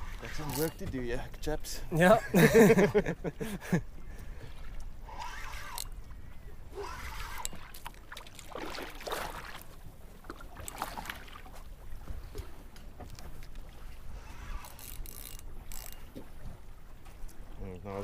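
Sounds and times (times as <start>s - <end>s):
boat engine low rumble: 0.0s - 18.0s
water sloshing and splashing: 0.0s - 18.0s.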